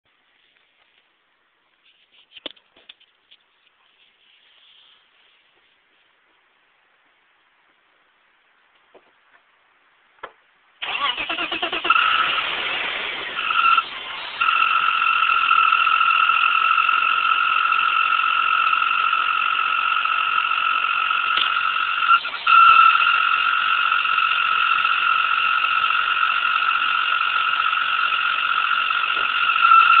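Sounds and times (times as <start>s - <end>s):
high-pitched car whine: 10.8s - 30.0s.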